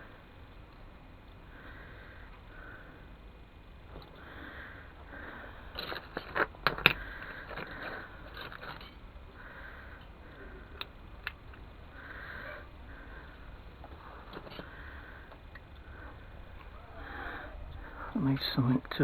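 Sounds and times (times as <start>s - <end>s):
person breathing: 4.1s - 6.2s, 9.3s - 11.2s, 11.8s - 18.2s
metal parts and tools clicking: 5.7s - 9.0s.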